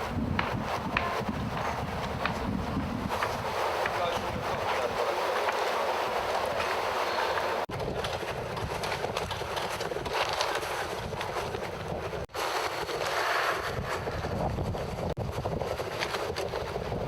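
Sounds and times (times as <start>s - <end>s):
wind buffeting microphone: 0.0s - 17.0s
rushing water: 3.2s - 7.7s.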